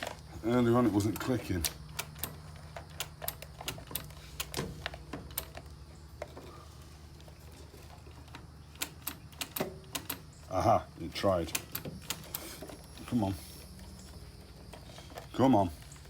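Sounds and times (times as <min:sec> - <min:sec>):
starter relay clicking: 0:08.3 - 0:10.3.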